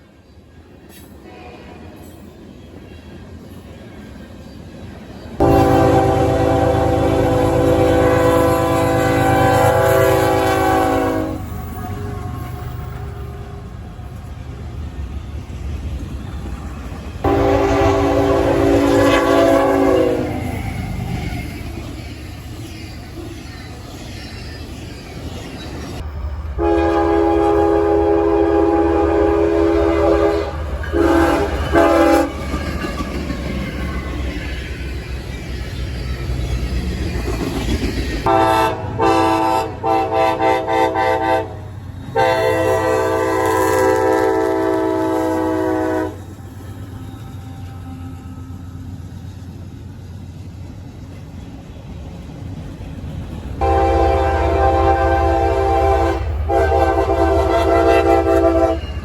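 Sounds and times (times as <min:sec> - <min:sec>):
passing train rumble and clatter: 0:00.0 - 0:59.0
locomotive air horn chord: 0:05.4 - 0:12.6, 0:17.2 - 0:20.5, 0:26.6 - 0:32.3, 0:38.3 - 0:46.3, 0:53.6 - 0:59.0.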